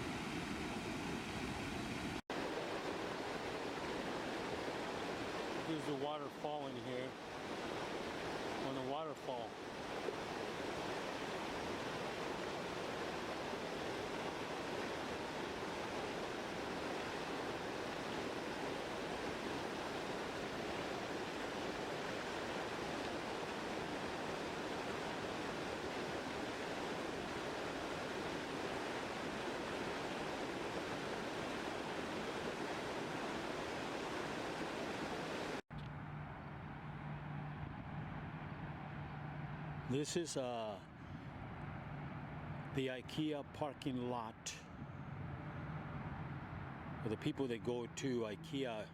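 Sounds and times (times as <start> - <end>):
water rushing over a drop: 2.0 - 35.6.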